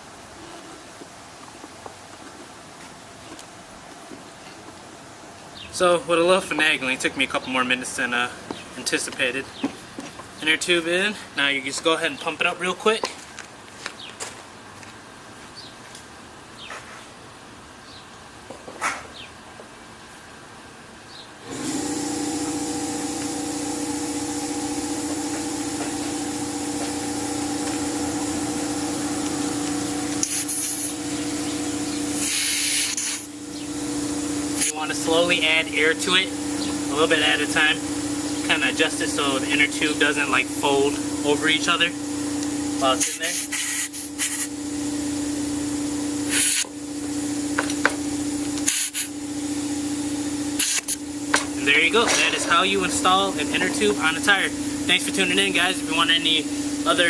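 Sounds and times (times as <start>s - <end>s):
air compressor running: 21.4s - 57.0s
motor hum: 21.4s - 57.0s
hiss of air: 21.7s - 31.4s, 32.1s - 33.4s, 34.0s - 34.8s, 43.0s - 44.6s, 46.3s - 46.9s, 48.5s - 49.7s, 50.6s - 51.0s.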